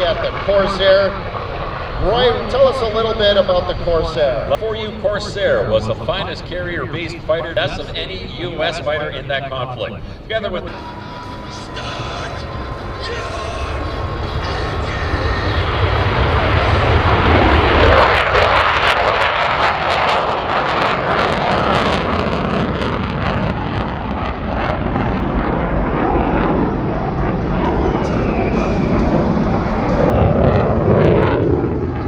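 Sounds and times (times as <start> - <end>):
jet engine roaring with crackle: 0.0 - 32.0.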